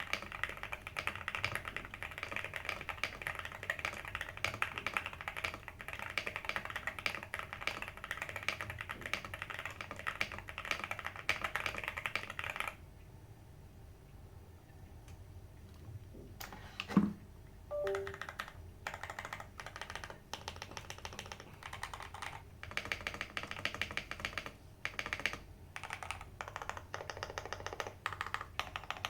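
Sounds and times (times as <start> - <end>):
mechanical keyboard typing: 0.0 - 12.8, 17.7 - 29.0
short tones: 17.7 - 18.2.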